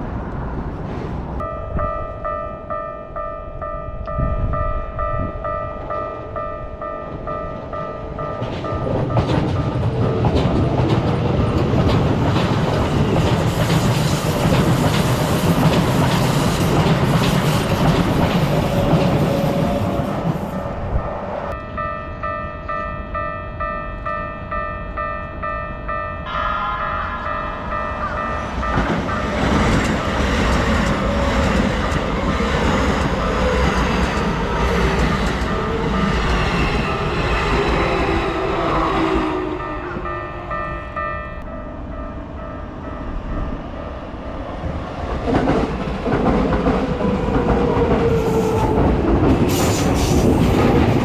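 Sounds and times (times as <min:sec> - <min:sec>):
trains passing: 0:00.0 - 0:51.0
level crossing bells ringing: 0:01.4 - 0:13.0, 0:21.5 - 0:32.2, 0:33.2 - 0:44.6.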